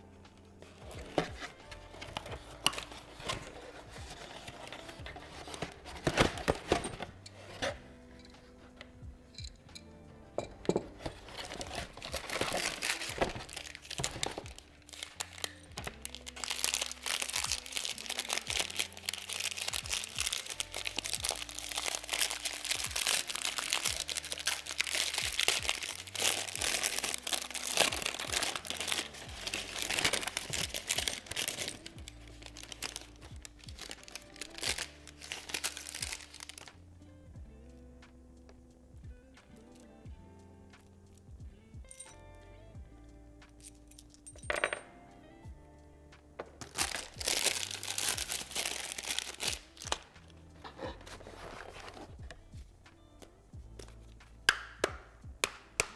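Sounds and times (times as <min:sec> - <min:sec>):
background music: 0:00.0 - 0:55.9
packaging crinkling: 0:11.0 - 0:36.7, 0:46.6 - 0:52.4.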